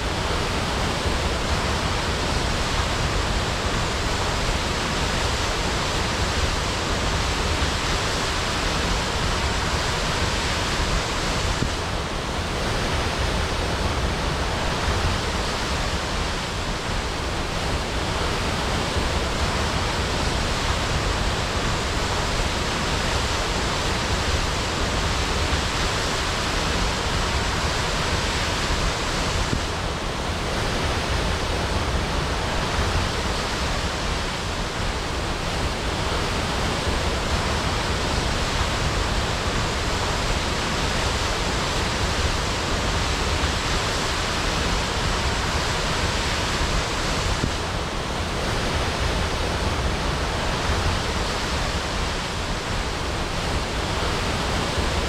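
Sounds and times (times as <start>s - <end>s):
waterfall crashing: 0.0s - 55.0s.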